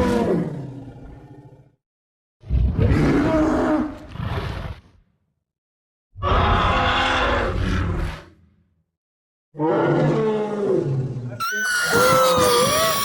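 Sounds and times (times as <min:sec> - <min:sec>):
high gliding tones: 0:11.4 - 0:13.0.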